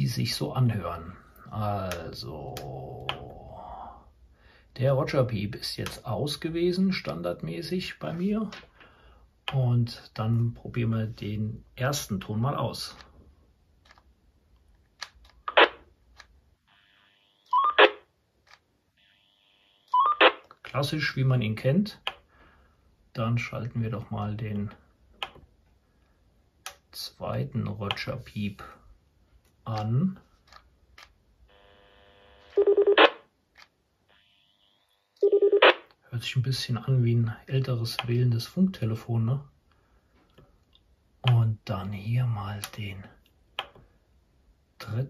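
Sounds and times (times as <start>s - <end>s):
radio hiss and crackle: 16.6s - 18.0s, 31.5s - 33.2s, 34.1s - 35.8s
radio roger beep: 16.8s - 18.0s, 19.0s - 20.4s.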